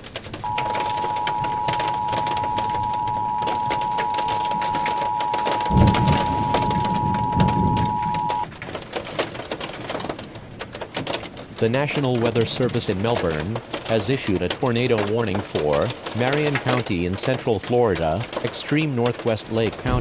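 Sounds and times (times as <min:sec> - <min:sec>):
rain hiss: 0:00.0 - 0:08.6, 0:11.1 - 0:20.0
thunder rumbling: 0:00.0 - 0:08.6, 0:19.7 - 0:20.0
two-tone alert signal: 0:00.4 - 0:08.5.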